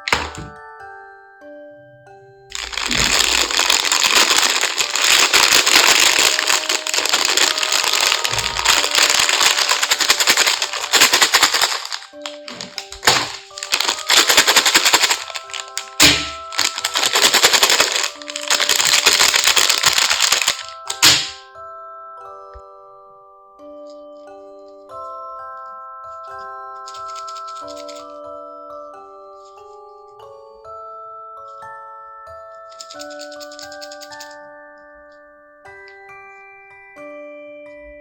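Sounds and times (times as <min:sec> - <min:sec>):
light background music: 0:00.0 - 0:38.0
plastic packaging crinkling: 0:02.5 - 0:21.4, 0:26.9 - 0:28.0, 0:32.7 - 0:34.3.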